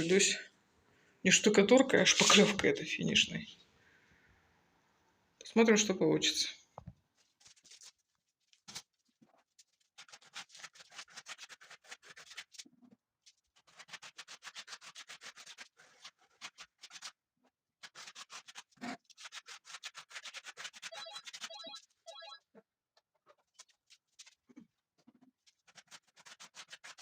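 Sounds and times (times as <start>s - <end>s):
putty knife scraping on wall: 25.5s - 27.0s.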